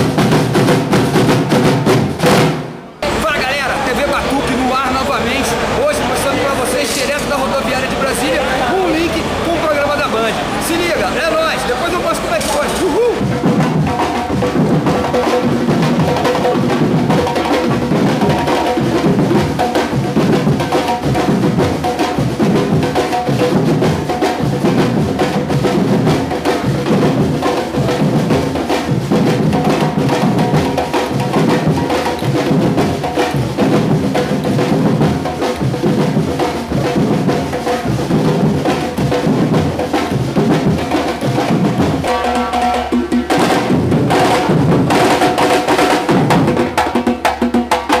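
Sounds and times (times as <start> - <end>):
percussion group drumming: 0.0 - 48.0.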